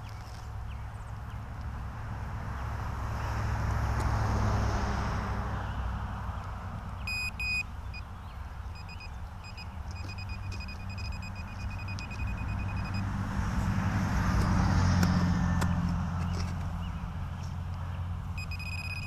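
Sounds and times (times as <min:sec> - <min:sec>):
metal detector beeping: 0:07.0 - 0:08.1, 0:08.8 - 0:13.1, 0:18.4 - 0:19.0.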